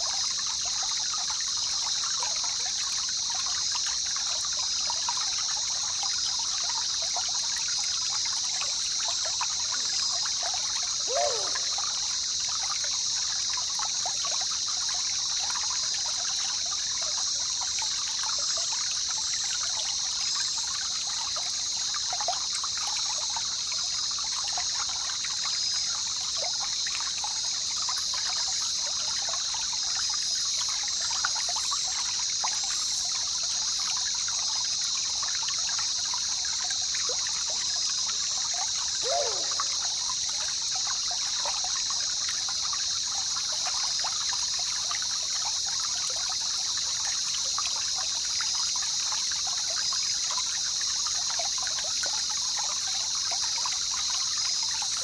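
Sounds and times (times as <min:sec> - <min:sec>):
high-pitched insect chorus: 0:00.0 - 0:55.0
river trickling and babbling: 0:00.0 - 0:55.0
call gliding down in pitch: 0:11.1 - 0:11.8, 0:39.0 - 0:39.7.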